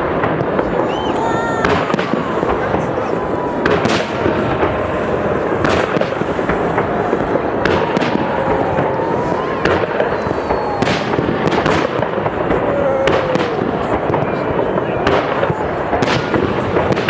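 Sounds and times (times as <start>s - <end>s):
dense firework crackle: 0.0s - 17.0s.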